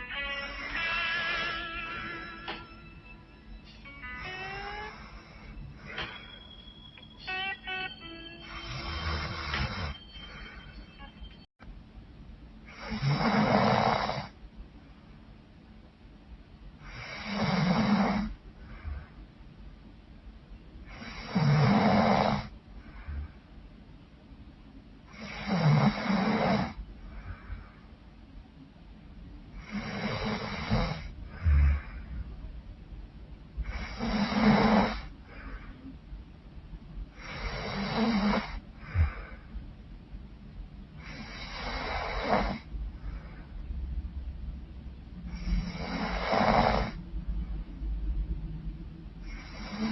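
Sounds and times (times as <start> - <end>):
woman snoring loudly: 4.1 - 6.2, 8.4 - 10.0, 12.8 - 14.3, 16.9 - 18.3, 21.0 - 22.5, 25.2 - 26.8, 29.6 - 31.9, 33.7 - 35.1, 37.2 - 39.2, 41.0 - 42.7, 45.3 - 47.0, 49.3 - 49.9.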